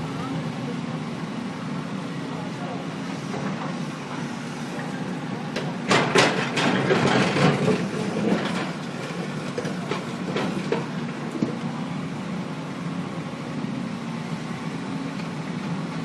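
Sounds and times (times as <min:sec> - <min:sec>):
construction machinery engine hum: 0:00.0 - 0:16.0
loud clanking and scraping: 0:03.2 - 0:11.6.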